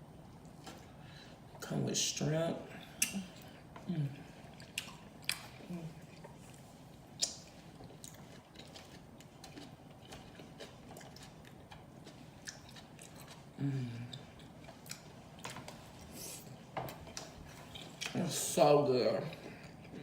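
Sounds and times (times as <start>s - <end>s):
chewing and mouth smacking: 3.0s - 18.2s
person humming: 3.1s - 4.2s, 13.6s - 14.2s.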